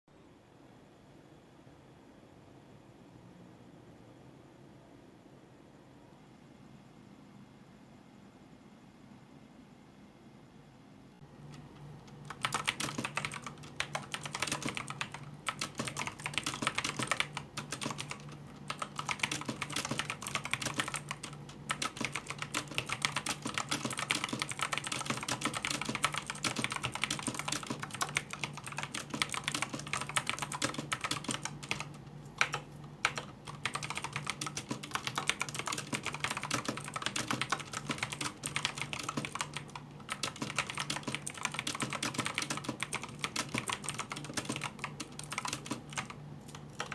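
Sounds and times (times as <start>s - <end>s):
low steady hum: 7.8s - 46.9s
mechanical keyboard typing: 11.4s - 46.9s.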